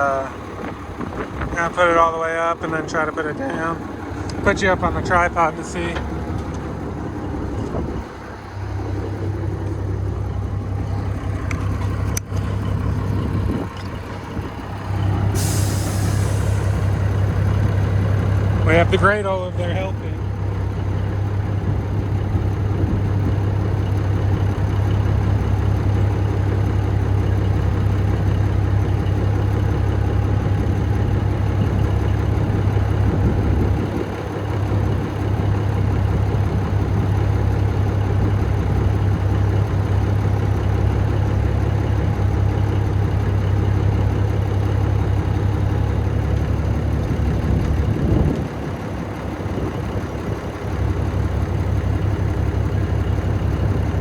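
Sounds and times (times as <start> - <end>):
diesel engine idling: 0.0 - 54.0.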